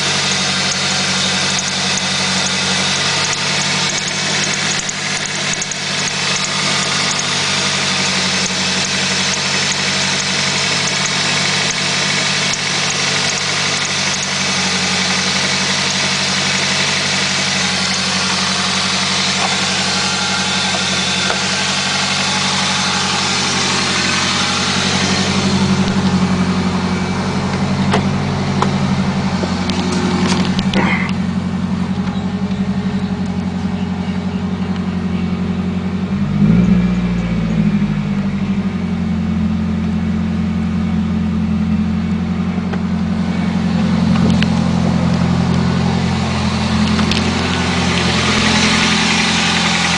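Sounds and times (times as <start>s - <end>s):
car engine idling: 0.0s - 49.9s.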